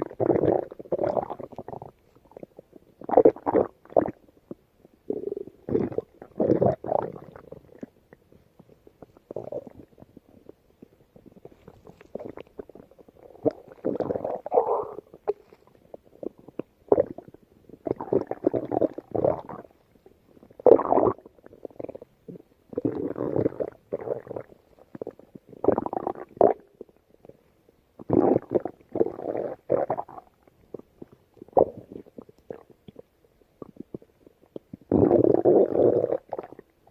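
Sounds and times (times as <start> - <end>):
stomach growling: 0.0 - 36.9.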